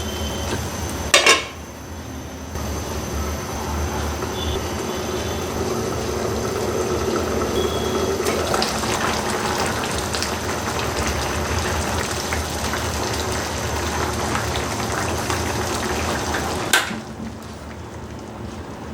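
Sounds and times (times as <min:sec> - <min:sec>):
food sizzling in a pan: 0:03.7 - 0:17.6.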